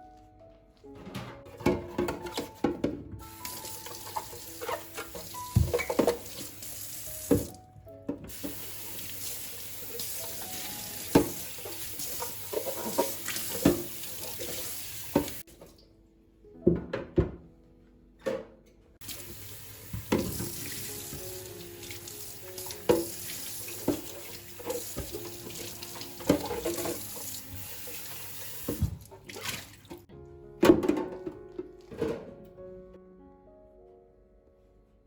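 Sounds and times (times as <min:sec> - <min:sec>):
soft background music: 0:00.0 - 0:35.0
dishes clattering and knocking: 0:01.0 - 0:06.5, 0:11.1 - 0:15.4, 0:23.8 - 0:27.1, 0:30.6 - 0:32.4
kitchen tap running into sink: 0:03.2 - 0:07.6, 0:08.3 - 0:15.5, 0:19.0 - 0:30.1.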